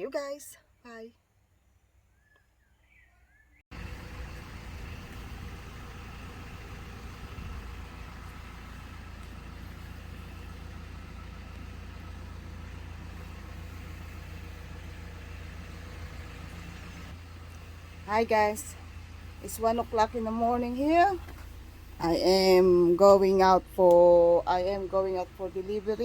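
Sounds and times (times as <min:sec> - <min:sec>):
vehicle engine idling: 0:03.7 - 0:26.0.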